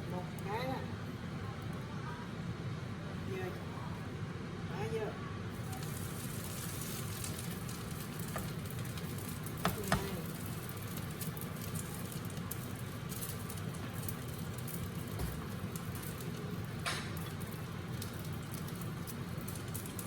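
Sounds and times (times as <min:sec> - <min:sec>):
tofu skin sizzling in hot oil: 0:05.5 - 0:20.0.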